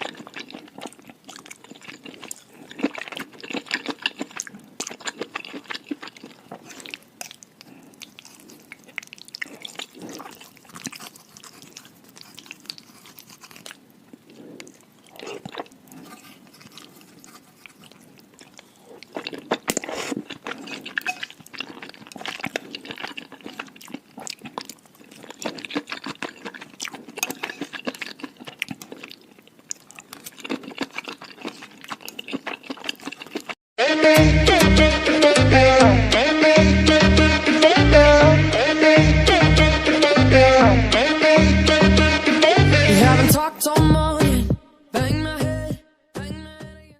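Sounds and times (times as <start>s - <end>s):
chewing and crunching food: 0.0s - 33.6s.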